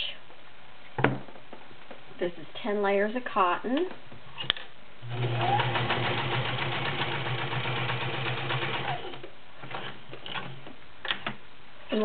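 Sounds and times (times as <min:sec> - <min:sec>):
sewing machine running: 0:05.0 - 0:09.9.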